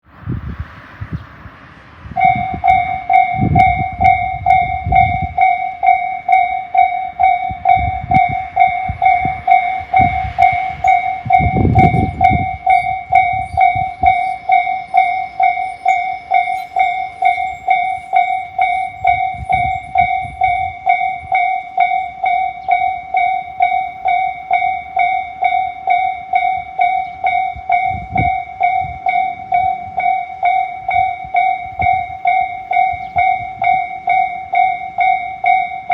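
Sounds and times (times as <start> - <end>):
low rumbles: 0.1 - 21.9
level crossing alarm dinging: 2.2 - 35.9.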